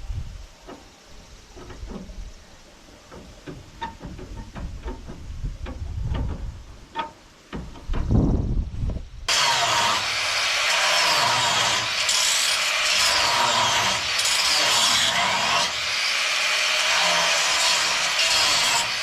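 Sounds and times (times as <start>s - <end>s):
metal knocks and clanks: 3.1s - 8.2s
cutoff wheel grinding steel: 9.3s - 19.0s.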